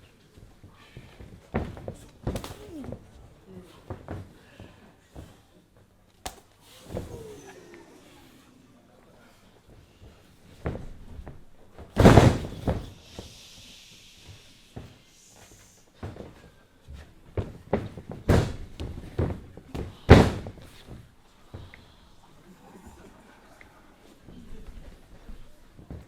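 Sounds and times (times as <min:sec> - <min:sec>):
bodies slamming onto ring canvas: 0:01.1 - 0:03.1, 0:10.5 - 0:13.2, 0:17.4 - 0:21.0.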